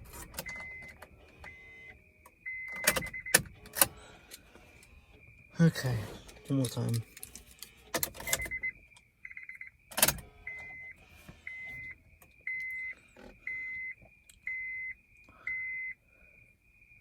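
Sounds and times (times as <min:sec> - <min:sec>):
dashboard warning chime beeps: 0:00.2 - 0:04.1, 0:08.1 - 0:16.0
faint steady high tone: 0:10.4 - 0:17.0.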